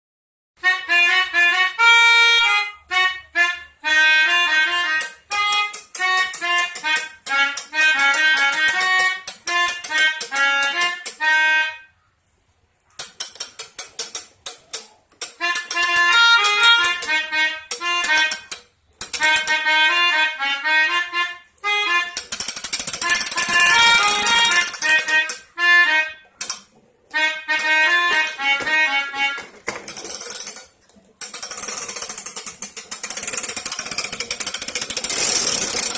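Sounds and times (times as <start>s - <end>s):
toy melodica reedy notes: 0.6s - 12.0s, 13.0s - 35.9s.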